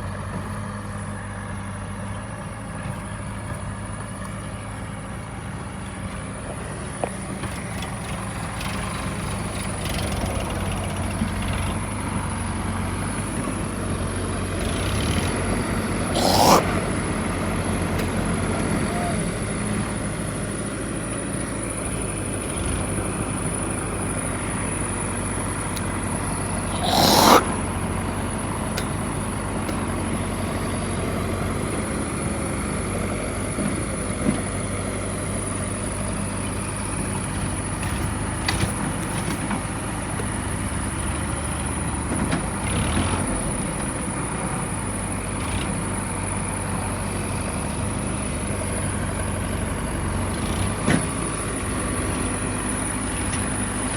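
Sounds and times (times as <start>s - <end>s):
backhoe diesel engine running: 0.0s - 26.8s, 27.4s - 53.9s
scrape or squeal: 16.1s - 16.8s, 26.7s - 27.5s.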